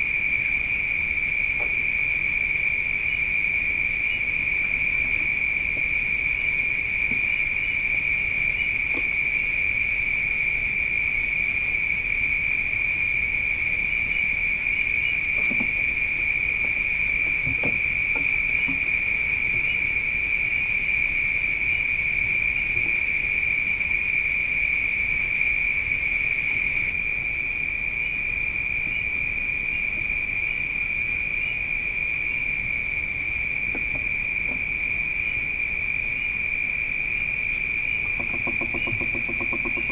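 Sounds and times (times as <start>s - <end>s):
crickets chirping: 0.0s - 39.9s
faint knocks: 38.0s - 39.9s.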